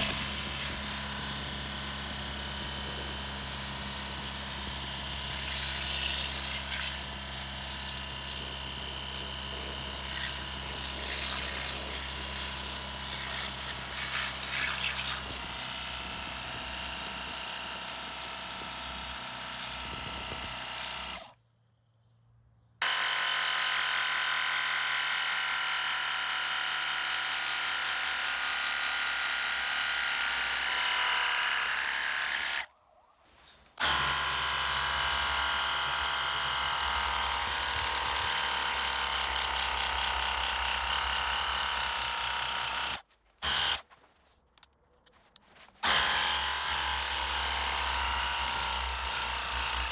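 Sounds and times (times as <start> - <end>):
electric pump motor hum: 0.0 - 21.4, 33.8 - 43.8, 45.8 - 49.9.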